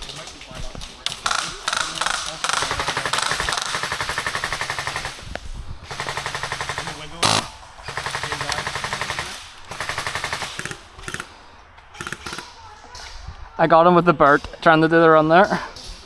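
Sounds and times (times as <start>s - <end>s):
sharp crack: 0.0s - 12.6s
airsoft gun full-auto bursts: 1.0s - 11.3s.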